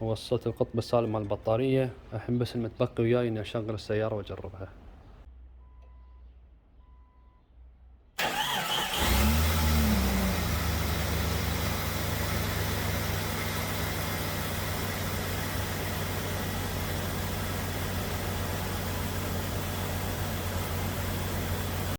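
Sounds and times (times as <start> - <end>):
car engine idling: 8.2 - 21.9
starter cranking engine: 8.2 - 21.9.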